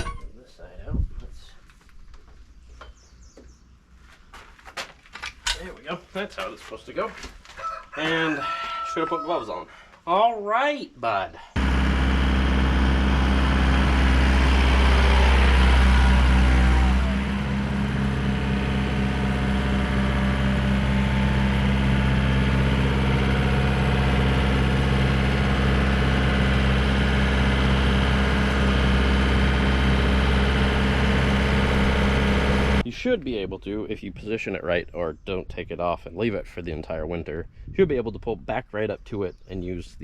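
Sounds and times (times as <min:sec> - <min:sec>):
tractor engine running: 0:11.6 - 0:32.8.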